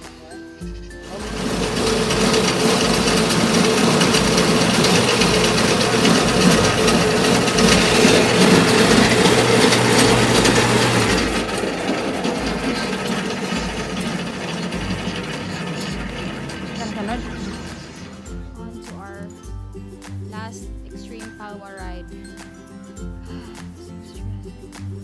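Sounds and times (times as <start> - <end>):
zipline pulley rolling on cable: 1.0 - 18.4.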